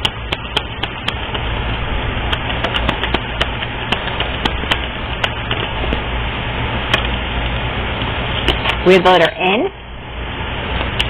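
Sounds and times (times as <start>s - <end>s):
sharp clicks and light clatter: 2.3s - 6.0s.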